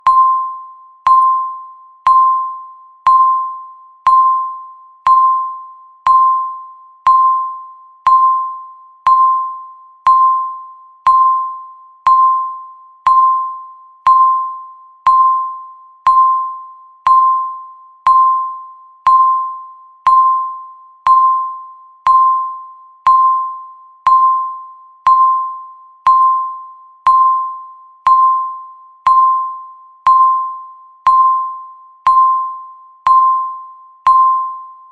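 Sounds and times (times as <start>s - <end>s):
timer ticking: 10.1s - 11.5s, 12.1s - 15.5s, 26.1s - 29.5s, 30.1s - 34.5s.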